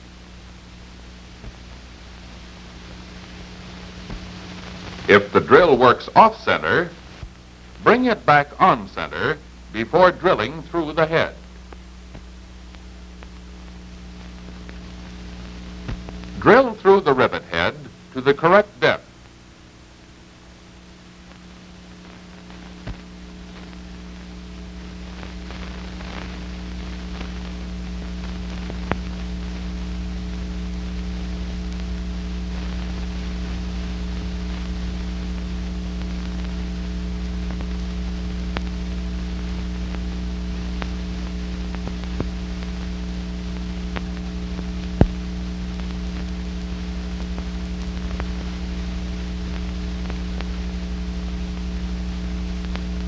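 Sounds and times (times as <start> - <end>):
electrical hum: 0.0 - 53.0
film soundtrack hiss: 0.0 - 53.0
faint clicks: 38.4 - 38.9.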